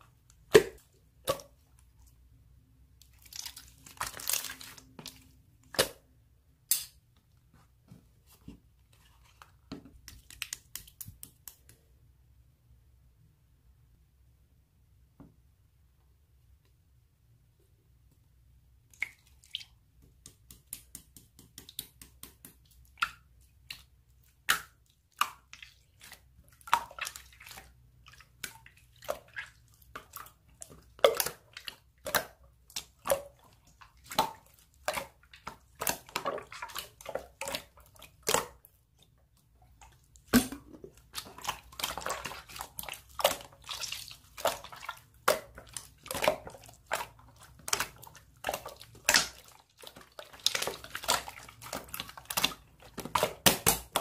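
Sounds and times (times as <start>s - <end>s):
slime squishing and popping: 40.2s - 54.0s.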